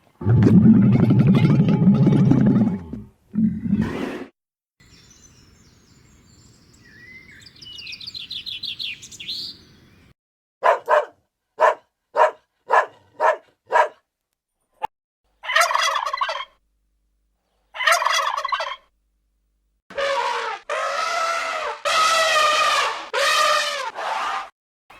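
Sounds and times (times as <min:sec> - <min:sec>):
turkey chirping: 0:15.4 - 0:16.6, 0:17.7 - 0:18.9
turkey gobbling: 0:15.4 - 0:16.6, 0:17.8 - 0:18.9
turkey sharp calls: 0:15.4 - 0:16.6, 0:17.7 - 0:18.9.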